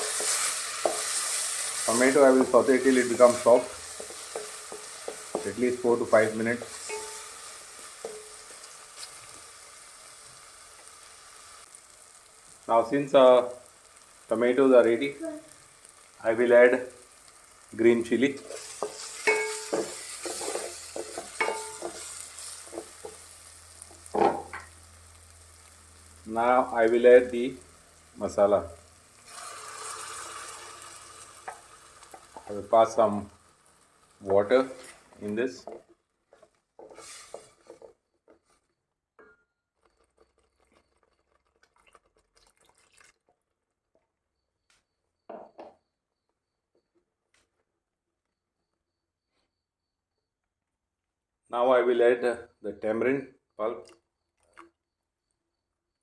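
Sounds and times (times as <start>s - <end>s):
spatula scraping a pan: 0.0s - 9.4s, 18.2s - 23.5s, 34.2s - 38.7s
food sizzling in a pan: 0.0s - 38.0s.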